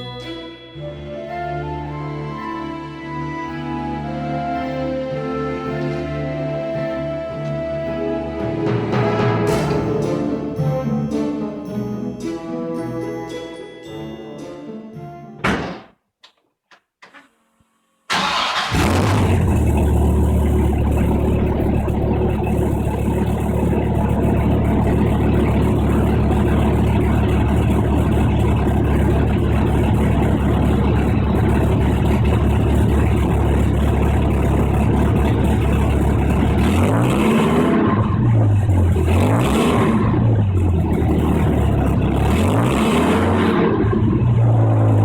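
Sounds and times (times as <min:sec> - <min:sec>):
engine throttle blips: 0:00.0 - 0:10.6, 0:18.1 - 0:45.0
car engine starting and idling: 0:02.8 - 0:10.4, 0:18.1 - 0:45.0.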